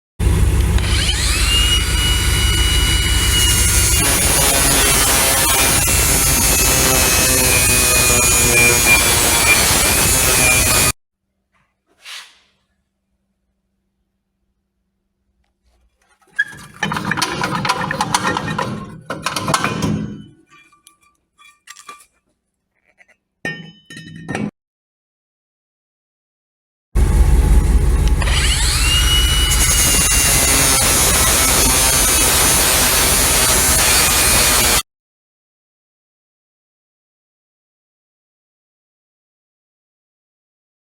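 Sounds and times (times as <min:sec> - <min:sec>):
harsh metallic grinding: 0:00.3 - 0:11.0, 0:16.1 - 0:23.2, 0:27.0 - 0:34.8
brakes grinding: 0:27.0 - 0:30.7.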